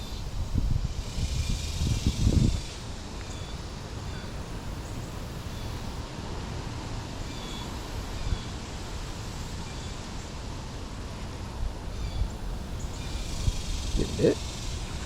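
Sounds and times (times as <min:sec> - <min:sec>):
birds chirping: 0:12.0 - 0:15.0.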